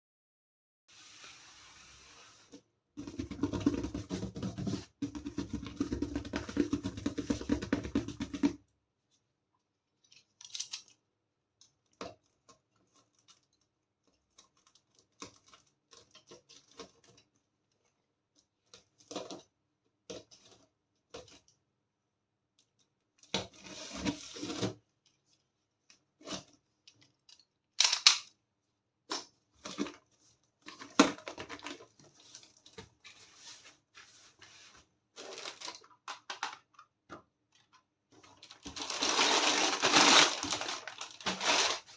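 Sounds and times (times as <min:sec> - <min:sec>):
packaging rustling and tearing: 0:35.2 - 0:36.6, 0:38.3 - 0:41.9.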